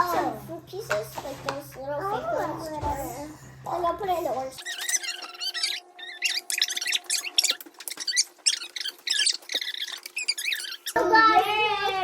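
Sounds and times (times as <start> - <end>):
slime squelching and squeaking: 4.5 - 12.0.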